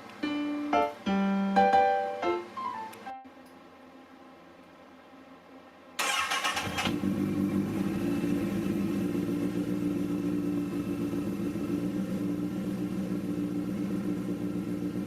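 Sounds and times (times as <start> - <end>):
motorcycle engine starting and idling: 6.0 - 15.0.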